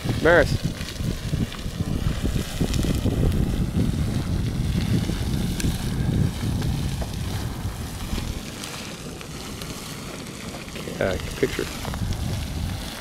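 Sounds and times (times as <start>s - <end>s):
low rumble: 0.0s - 8.6s, 10.7s - 13.0s
geyser roaring: 0.0s - 13.0s.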